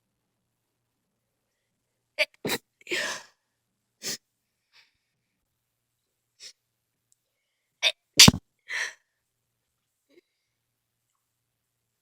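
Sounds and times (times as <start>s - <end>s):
faint breath sounds: 4.1s - 5.5s
person sneezing: 8.2s - 8.4s.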